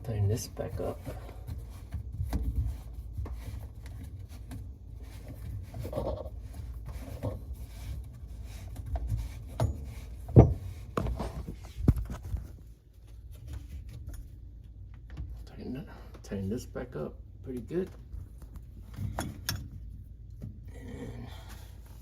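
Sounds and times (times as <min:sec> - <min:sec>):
hands rubbing plumbing fittings: 0:00.0 - 0:15.4.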